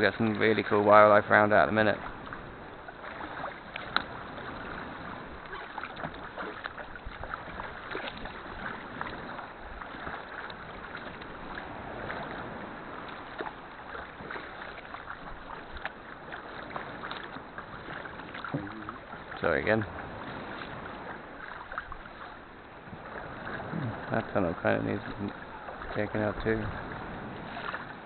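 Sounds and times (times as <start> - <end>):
kayak paddle splashing water: 0.0 - 28.0.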